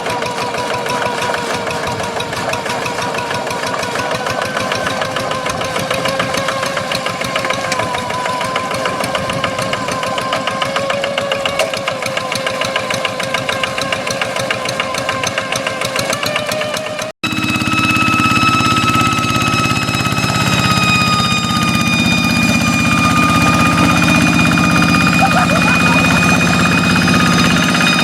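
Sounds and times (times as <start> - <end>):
diesel engine running: 0.0 - 28.0
wavering engine whine: 0.0 - 28.0.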